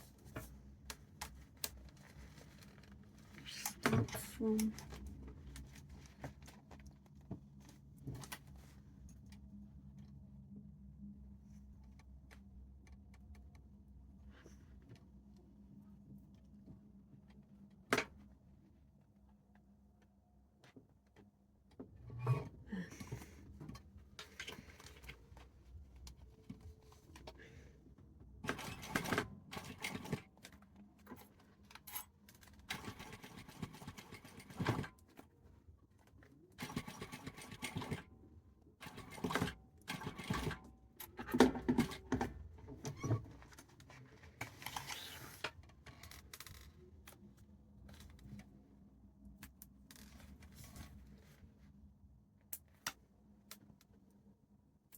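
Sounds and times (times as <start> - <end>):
sewing machine stitching: 28.5 - 30.3, 32.7 - 34.9, 36.6 - 38.1, 38.8 - 42.2.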